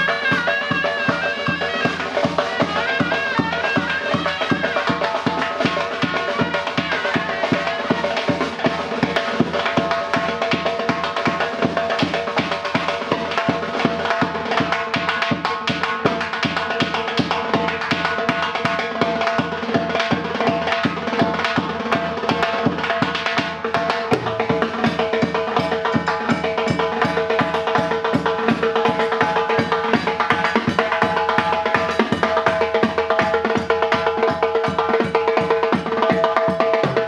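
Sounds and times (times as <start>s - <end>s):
shawm playing long notes: 0.0s - 9.0s, 23.9s - 27.0s, 30.2s - 37.0s
fast steady drumming: 0.0s - 37.0s.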